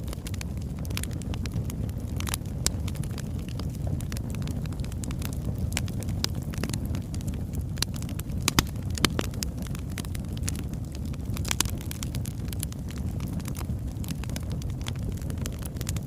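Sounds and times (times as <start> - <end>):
burning logs crackling and popping: 0.0 - 16.0
low rush of fire: 0.0 - 16.0.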